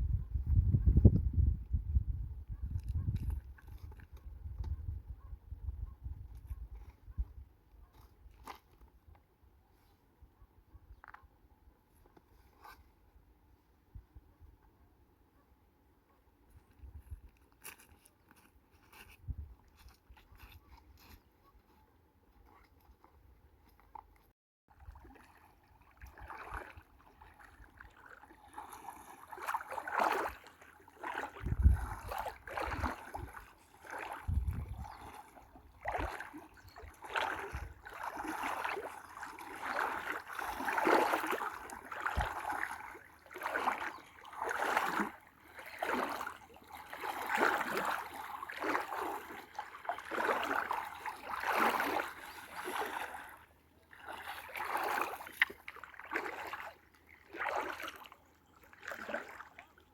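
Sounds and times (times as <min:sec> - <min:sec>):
water splashing and sloshing: 0:02.7 - 0:04.8, 0:16.6 - 0:59.9.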